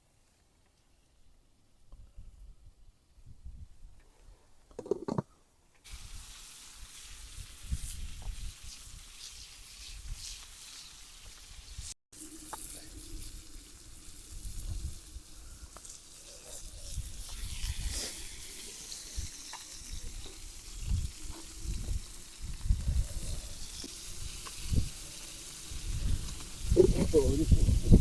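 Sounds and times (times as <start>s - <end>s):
faint crackles: 4.0s - 28.0s
food sizzling in a pan: 5.9s - 28.0s.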